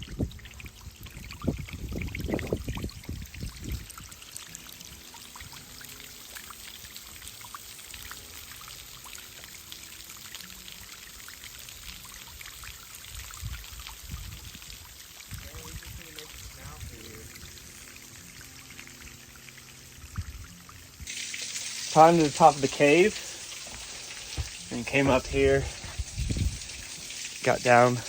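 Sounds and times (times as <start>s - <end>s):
water drips spattering: 0.0s - 28.0s
waterfall rushing: 21.1s - 28.0s
thumps on microphone: 23.7s - 24.6s.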